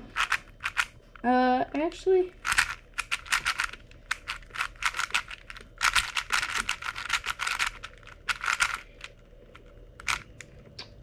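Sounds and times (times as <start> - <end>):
plastic speed cube clicking: 0.2 - 0.9, 2.4 - 9.1, 10.0 - 10.4.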